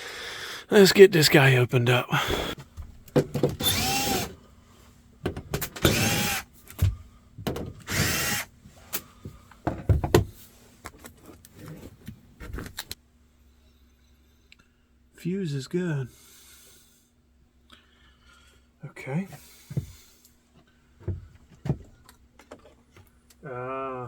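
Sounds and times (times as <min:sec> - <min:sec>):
cordless drill spinning screws: 0:03.6 - 0:04.4, 0:05.7 - 0:06.5, 0:07.8 - 0:08.5.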